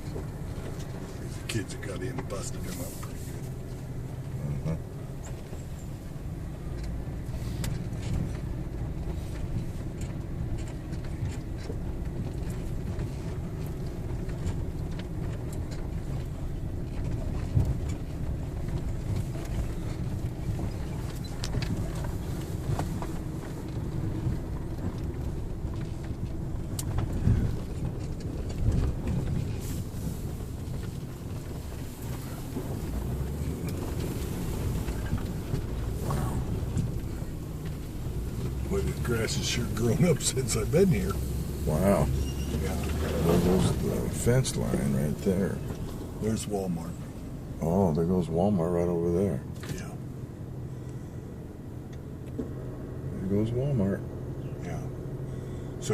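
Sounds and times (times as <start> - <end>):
vehicle bumps: 0.0 - 48.7
vehicle engine and road rumble: 0.0 - 55.9.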